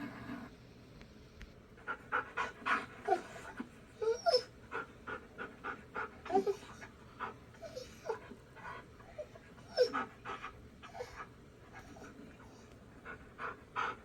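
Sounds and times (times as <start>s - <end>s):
dog panting: 1.8s - 14.0s
dog whining: 2.7s - 4.6s, 6.2s - 6.9s, 7.6s - 12.6s.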